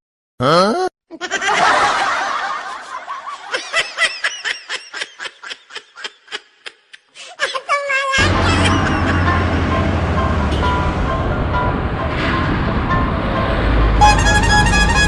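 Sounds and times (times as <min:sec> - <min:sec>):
laughter: 0:01.1 - 0:09.3.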